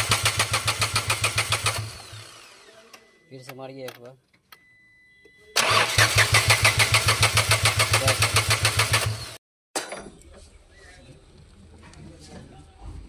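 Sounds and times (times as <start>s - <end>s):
engine cranking on starter motor: 0.0s - 2.8s, 5.6s - 9.4s.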